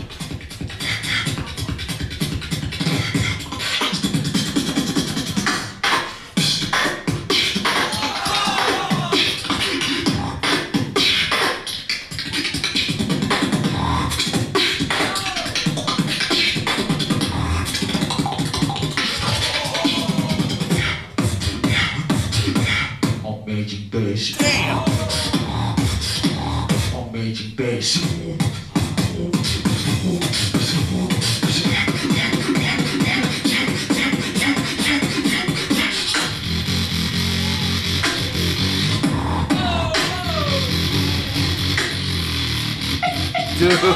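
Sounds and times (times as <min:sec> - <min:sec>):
beatboxing: 0:00.0 - 0:43.9
sliding vocal pitches: 0:05.1 - 0:17.2, 0:17.8 - 0:23.4, 0:24.2 - 0:28.4, 0:29.1 - 0:43.9
deep bass tones: 0:24.4 - 0:27.4, 0:36.4 - 0:43.9.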